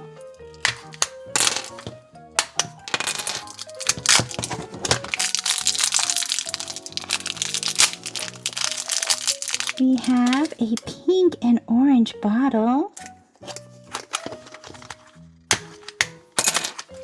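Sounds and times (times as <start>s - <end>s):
background music: 0.0s - 17.0s
plastic wrapping crackling: 0.6s - 10.9s.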